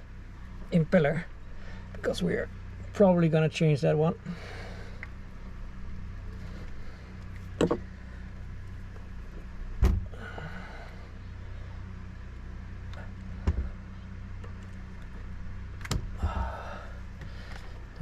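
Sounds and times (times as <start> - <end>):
steady low hum: 0.0 - 18.0
sharp knocks on pump housing: 7.6 - 7.9.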